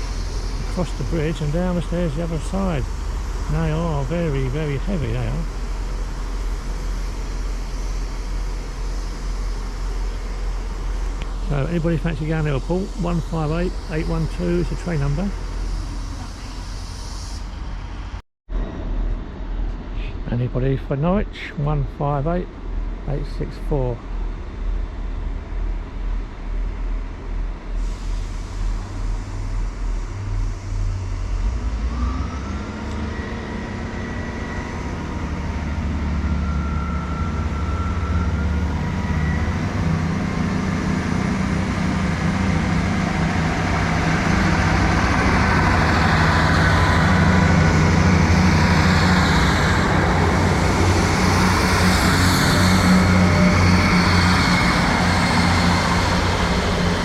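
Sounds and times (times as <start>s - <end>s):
rail noise: 0.0s - 57.0s
train diesel engine throbbing: 0.0s - 57.0s.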